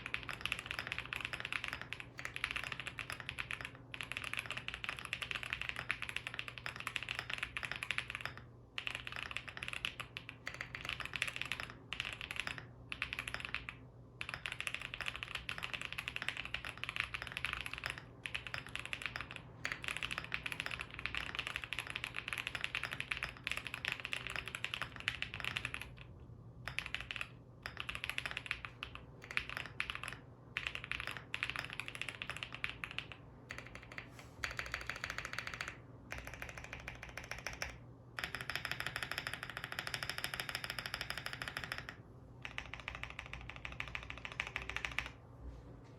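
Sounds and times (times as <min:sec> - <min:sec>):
mechanical keyboard typing: 0:00.0 - 0:45.2.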